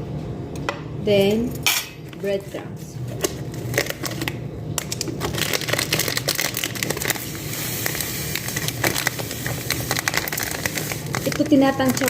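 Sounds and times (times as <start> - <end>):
steady low hum: 0.0 - 12.0
package crinkling: 3.0 - 12.0
breadcrumbs pouring: 5.3 - 12.0.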